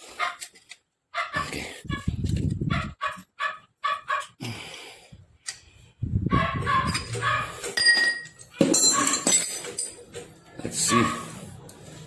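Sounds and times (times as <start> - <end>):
dog barking: 0.2 - 0.4, 1.2 - 2.1, 2.7 - 4.3, 6.3 - 7.6, 10.9 - 11.4.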